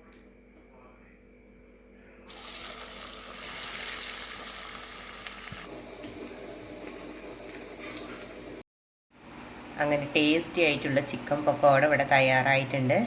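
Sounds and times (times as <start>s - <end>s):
batter sizzling in hot oil: 2.3s - 8.6s.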